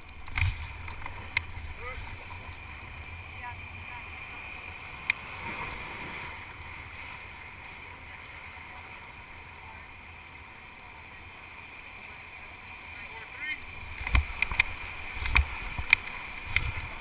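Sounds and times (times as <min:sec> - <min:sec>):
wind rumble on microphone: 0:13.8 - 0:17.0.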